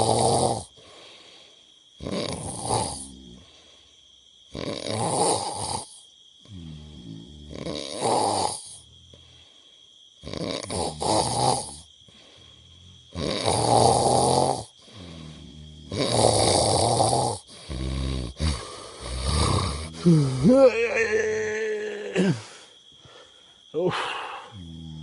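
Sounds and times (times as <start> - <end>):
loud rasping snores: 0.0 - 0.9, 2.0 - 3.6, 4.5 - 8.9, 10.2 - 11.9, 12.6 - 20.8, 24.3 - 25.0
pitched breaths: 0.6 - 4.1, 8.5 - 9.9, 11.6 - 13.7, 14.6 - 16.6, 17.3 - 20.7, 21.6 - 25.0.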